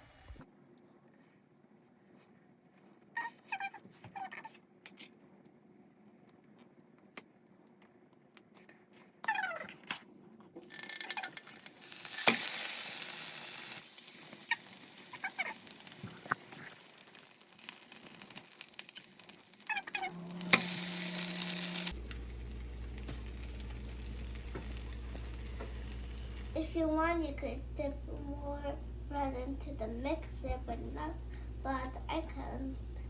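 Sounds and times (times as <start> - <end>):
bread sizzling in a pan: 10.6 - 26.6
low steady hum: 20.0 - 33.0.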